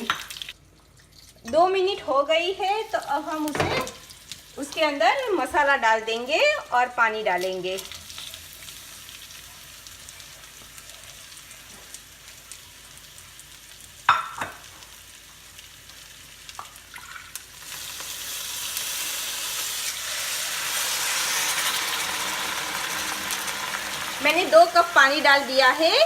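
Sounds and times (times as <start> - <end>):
vegetables sizzling in hot oil: 1.8 - 26.0
loud hiss of water in hot oil: 17.5 - 25.3.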